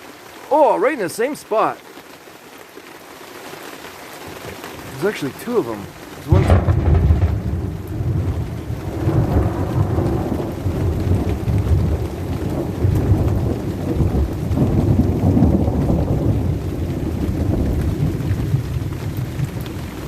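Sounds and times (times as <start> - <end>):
steady rain: 0.0 - 20.0
thunder rumbling: 4.8 - 20.0.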